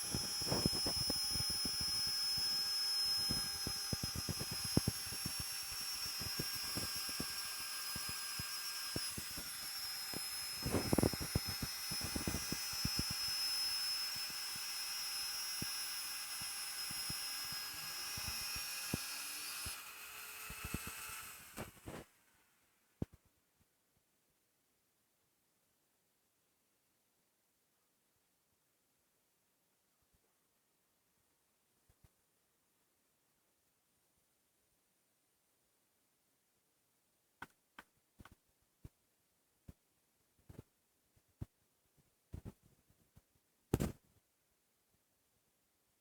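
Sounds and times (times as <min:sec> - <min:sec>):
cnc router high whine: 0:00.0 - 0:22.0.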